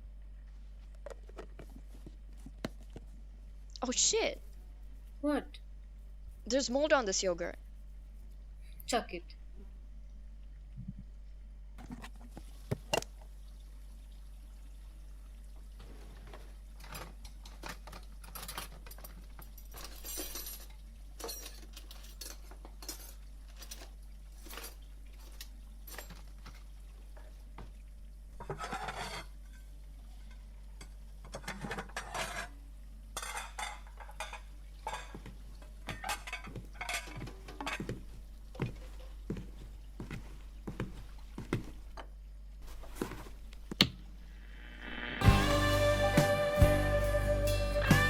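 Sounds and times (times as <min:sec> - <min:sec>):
low electrical hum: 0:00.0 - 0:48.0
crockery and cutlery clinking: 0:16.8 - 0:26.3.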